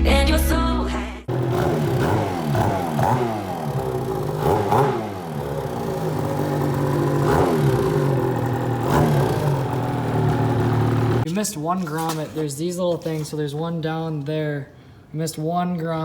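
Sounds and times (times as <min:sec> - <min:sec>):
snowmobile engine revving: 0:01.3 - 0:11.3.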